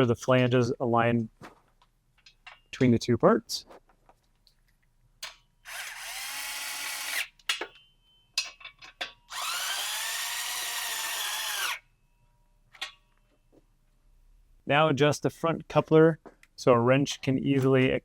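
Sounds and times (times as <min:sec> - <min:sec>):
small metallic clicks: 0:04.2 - 0:05.5
cordless power tool motor spinning: 0:05.6 - 0:07.2, 0:09.3 - 0:11.8.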